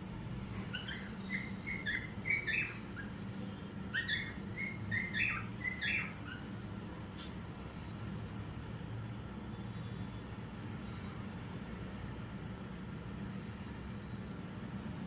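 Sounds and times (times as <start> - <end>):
low background hum: 0.0 - 15.0
cockatiel whistling: 0.7 - 3.1, 3.9 - 6.4.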